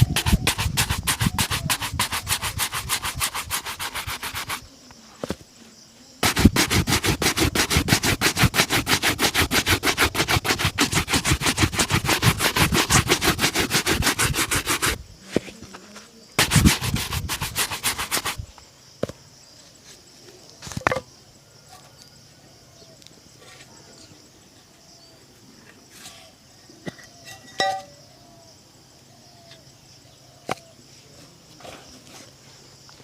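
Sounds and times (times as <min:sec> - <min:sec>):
brushing a leather shoe: 0:00.0 - 0:04.7, 0:06.2 - 0:15.6, 0:16.4 - 0:18.4.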